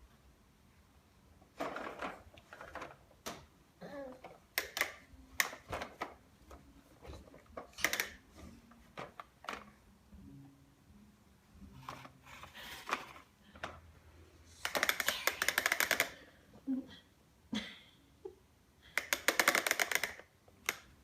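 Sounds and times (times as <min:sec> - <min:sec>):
vacuum cleaner knocking and rattling: 0:01.6 - 0:03.4.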